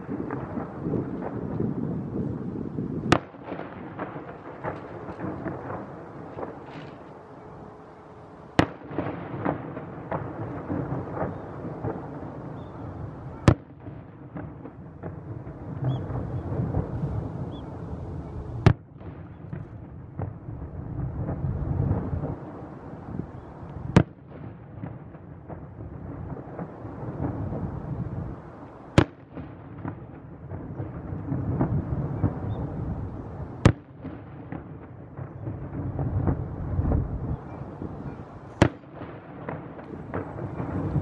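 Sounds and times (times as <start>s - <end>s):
salute fireworks bangs: 0.0s - 41.0s
steady background noise: 0.0s - 41.0s.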